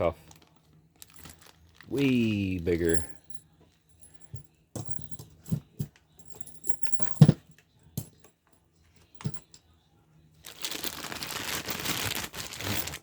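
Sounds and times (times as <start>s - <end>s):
packaging rustling: 0.2s - 3.0s, 10.4s - 13.0s
metal handcuffs clinking: 1.0s - 8.3s, 9.0s - 9.6s, 10.5s - 13.0s.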